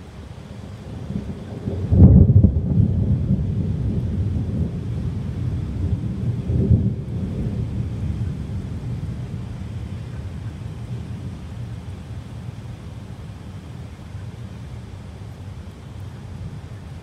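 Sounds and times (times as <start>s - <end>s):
rain hissing: 0.0s - 17.0s
thunder rumbling: 0.6s - 17.0s.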